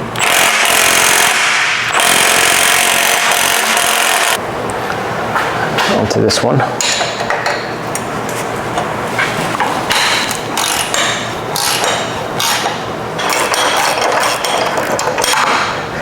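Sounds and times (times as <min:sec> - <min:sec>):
socket ratchet clicking: 0:00.2 - 0:04.4.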